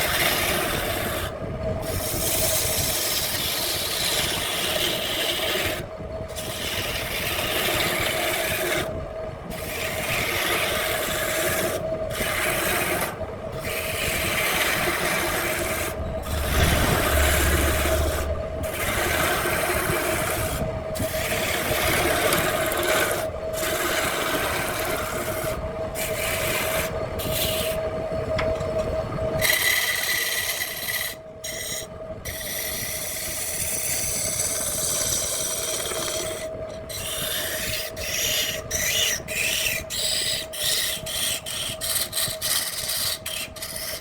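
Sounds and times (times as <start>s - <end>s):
tool scraping spinning wood: 9.5s - 27.8s, 33.6s - 44.0s
wood lathe humming: 10.6s - 27.8s.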